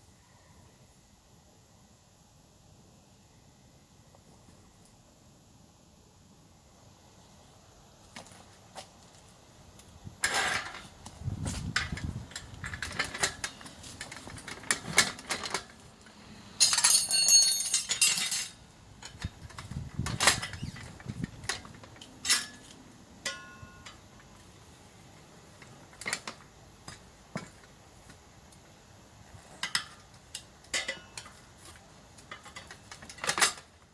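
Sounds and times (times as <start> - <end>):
metal tools clinking and scraping: 10.2 - 24.3, 29.5 - 33.9.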